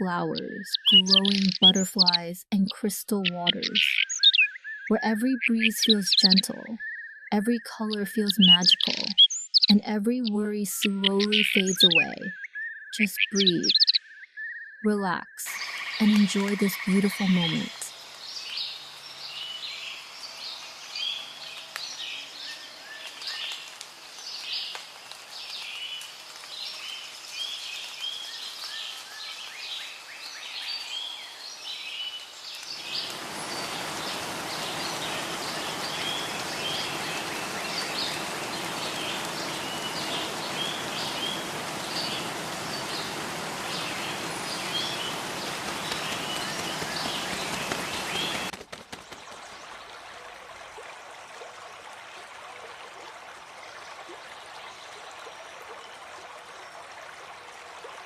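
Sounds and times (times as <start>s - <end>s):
songbirds chirping and singing: 0.0s - 14.8s, 27.4s - 48.5s
steady rain falling: 15.5s - 58.0s.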